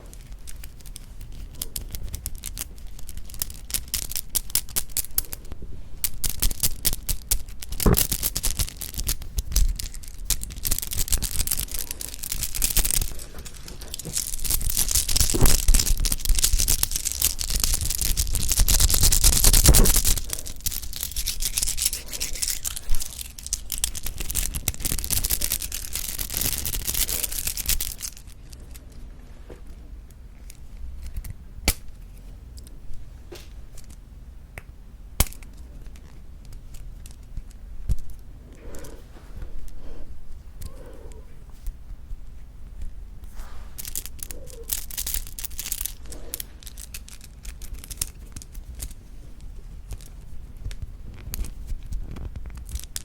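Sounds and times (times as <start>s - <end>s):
plastic packaging crinkling: 0.0s - 28.9s, 43.4s - 53.0s.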